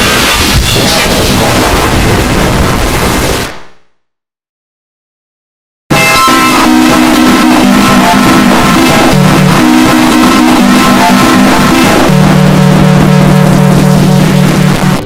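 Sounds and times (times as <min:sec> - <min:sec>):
loud distorted music: 0:05.9 - 0:15.0.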